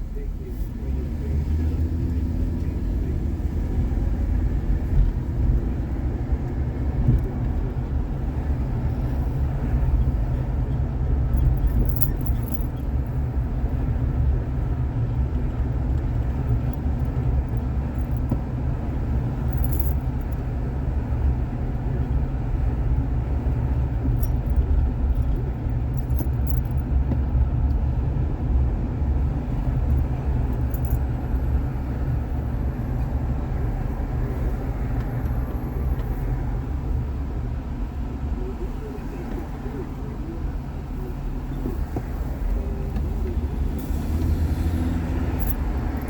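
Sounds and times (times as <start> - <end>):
car road and engine rumble: 0.0 - 46.0.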